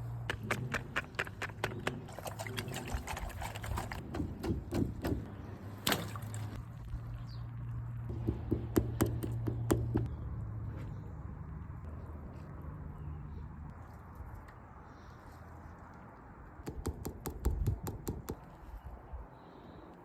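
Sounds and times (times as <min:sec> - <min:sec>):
water pouring and splashing: 0:02.1 - 0:04.2, 0:05.8 - 0:06.6.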